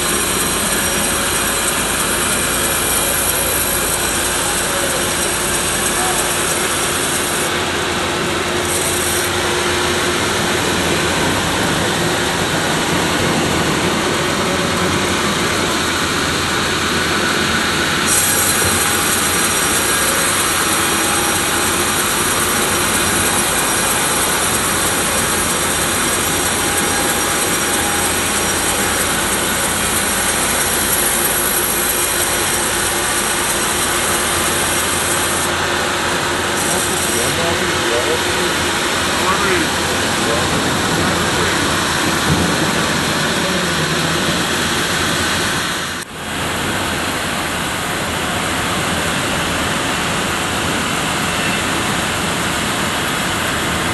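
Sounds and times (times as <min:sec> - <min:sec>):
bandsaw cutting through a log: 0:00.0 - 0:12.5, 0:16.9 - 0:42.6.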